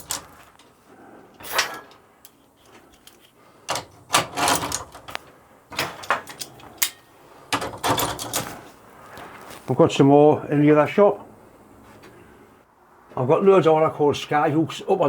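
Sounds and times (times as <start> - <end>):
pliers knocking in steel rack: 3.0 - 8.6.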